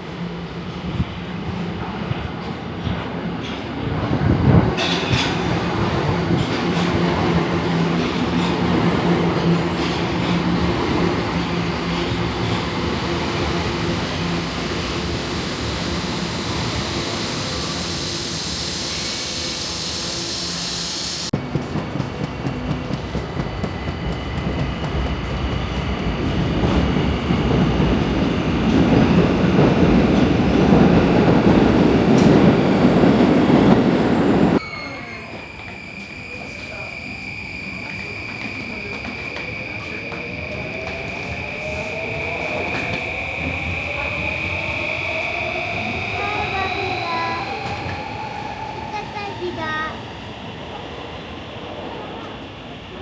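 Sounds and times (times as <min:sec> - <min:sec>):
train motor hum: 0:05.7 - 0:21.3
high hiss: 0:13.0 - 0:21.3.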